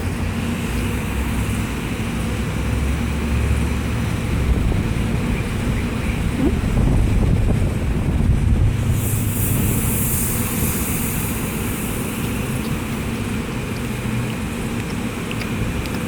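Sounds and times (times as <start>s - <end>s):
wind buffeting microphone: 3.9s - 16.0s
high hiss: 8.8s - 13.0s.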